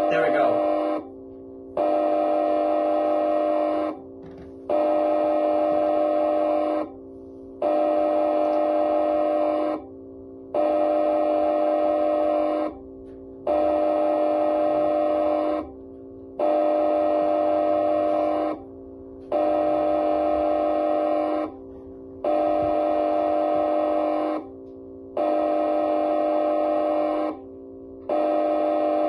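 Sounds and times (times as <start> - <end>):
deep air horn blasts: 4.6 - 9.8, 16.4 - 29.0
quieter low tone: 24.4 - 25.2.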